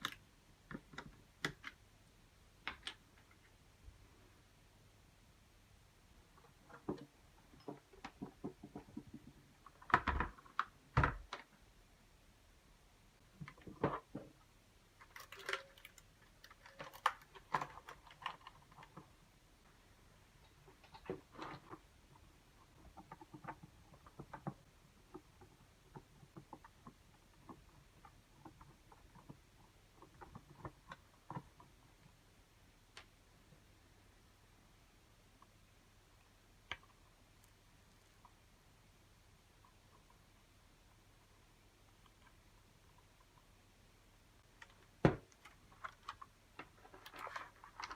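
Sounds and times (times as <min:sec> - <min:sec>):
plastic parts clicking and knocking: 0:00.0 - 0:01.8, 0:06.4 - 0:11.6, 0:15.0 - 0:19.2, 0:20.4 - 0:32.0
small keyboard parts clicking: 0:15.0 - 0:19.1.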